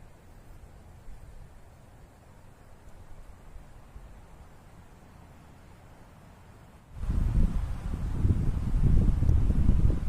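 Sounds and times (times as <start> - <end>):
wind buffeting microphone: 6.9 - 10.0.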